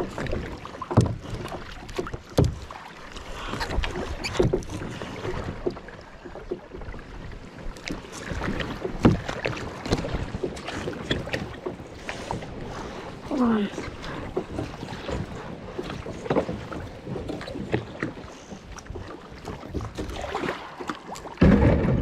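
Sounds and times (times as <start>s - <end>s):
wind: 0.0s - 22.0s
knocks on boat hull: 21.4s - 22.0s.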